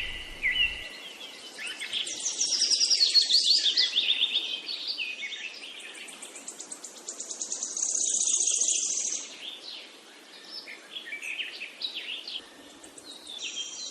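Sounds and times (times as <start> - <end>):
birds chirping and whistling: 0.0 - 1.0
background hiss: 0.0 - 13.9.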